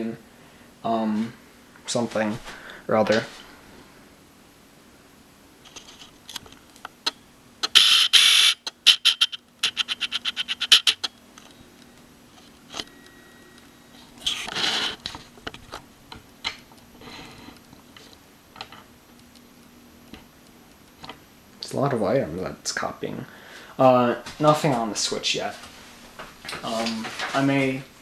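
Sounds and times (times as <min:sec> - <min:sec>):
rapid clicks: 0:08.6 - 0:11.1
rustling noise: 0:24.2 - 0:27.9.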